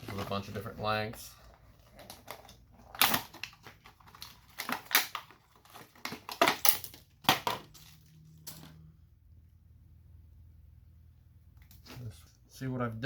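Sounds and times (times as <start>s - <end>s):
hands rummaging through packaging: 0.0s - 8.6s.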